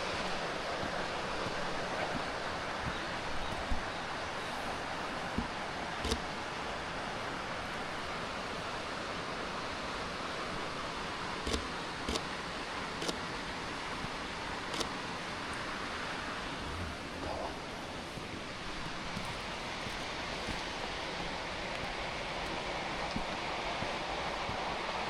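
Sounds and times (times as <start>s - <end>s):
waterfall roaring: 0.0s - 25.0s.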